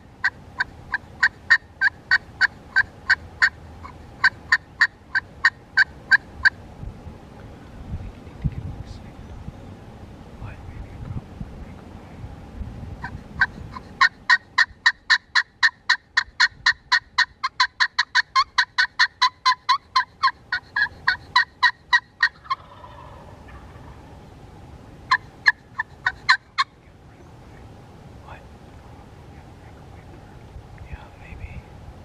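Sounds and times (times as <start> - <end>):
wind rumbling: 0.0 - 32.0
turkey yelping: 0.2 - 6.6, 13.0 - 24.2, 25.1 - 27.6.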